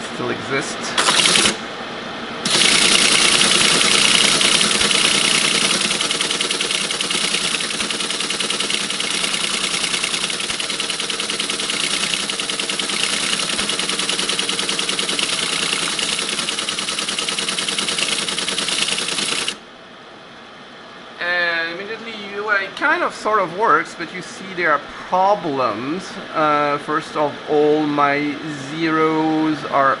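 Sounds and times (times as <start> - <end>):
motor humming: 2.4 - 19.6
teleprinter clattering: 2.5 - 19.6.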